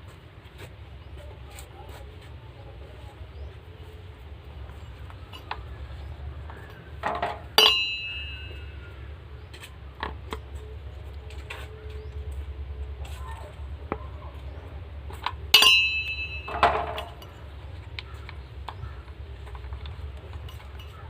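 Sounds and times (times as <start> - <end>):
steady low hum: 0.0 - 21.0
loud ringing metallic clink: 7.6 - 8.9, 15.5 - 17.4.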